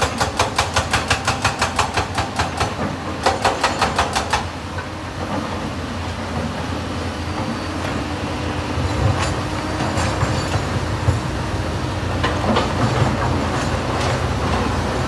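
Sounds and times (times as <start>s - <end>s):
sharp metallic knocks: 0.0s - 4.5s
excavator diesel engine rumbling: 4.4s - 15.0s.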